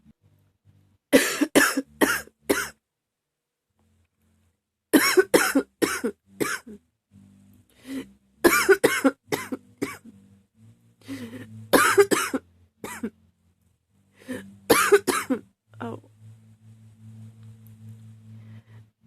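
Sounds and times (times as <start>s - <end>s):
woman coughing: 1.2s - 2.8s, 5.0s - 6.8s, 8.5s - 10.1s, 11.8s - 13.1s, 14.7s - 15.4s.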